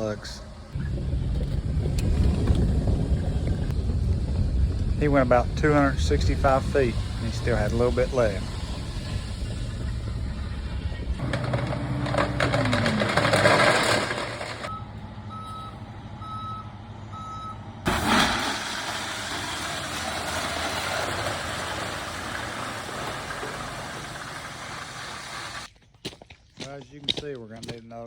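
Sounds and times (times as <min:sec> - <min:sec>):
dump truck engine running: 0:00.5 - 0:25.7
backup alarm beeping: 0:14.7 - 0:17.6.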